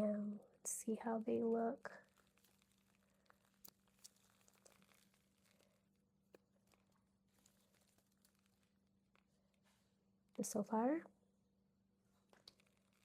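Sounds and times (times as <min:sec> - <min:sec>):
faint paper rustling: 0:01.5 - 0:10.5, 0:12.0 - 0:13.0.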